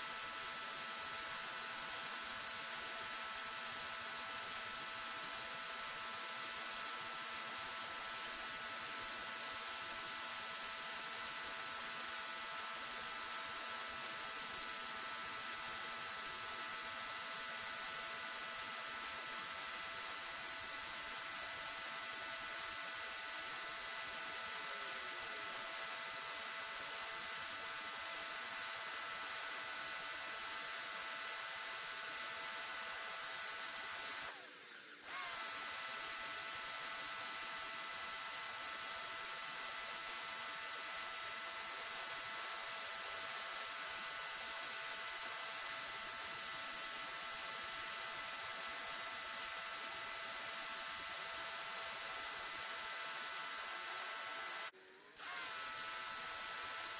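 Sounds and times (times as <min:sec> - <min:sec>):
pressure washer motor whine: 0:33.8 - 0:37.7.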